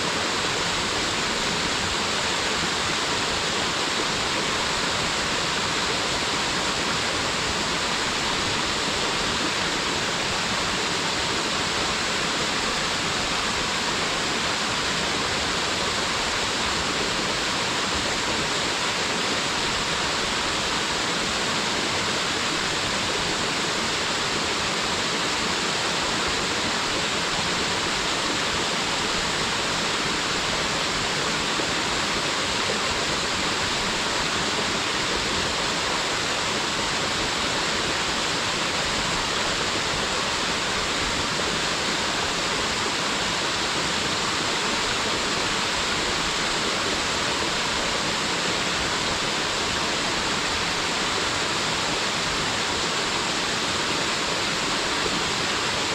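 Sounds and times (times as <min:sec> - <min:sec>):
waterfall rushing: 0:00.0 - 0:55.9.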